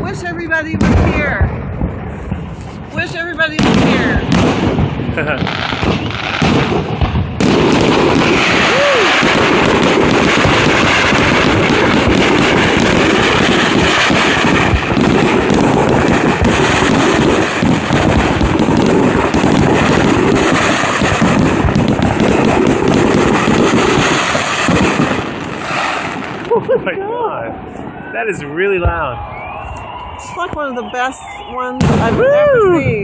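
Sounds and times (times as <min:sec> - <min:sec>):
fireworks bursting and crackling: 0:00.0 - 0:33.0.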